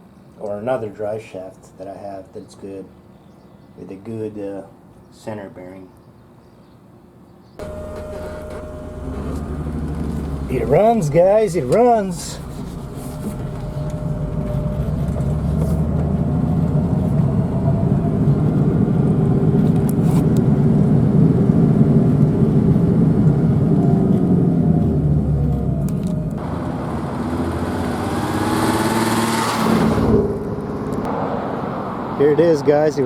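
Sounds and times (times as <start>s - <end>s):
car engine running: 7.6s - 31.1s.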